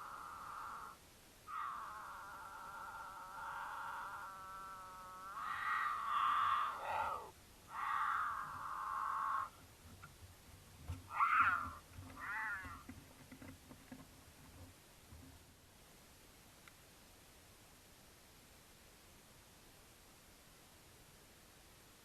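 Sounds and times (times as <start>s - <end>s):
mountain lion yowling: 0.0s - 9.6s, 11.0s - 12.9s.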